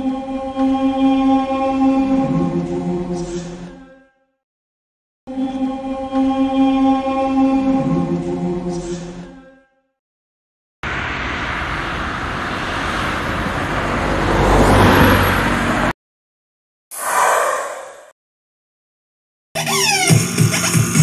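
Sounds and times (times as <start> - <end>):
music: 0.0 - 4.4, 5.3 - 10.0, 19.6 - 21.0
rushing sound effect: 16.9 - 18.2.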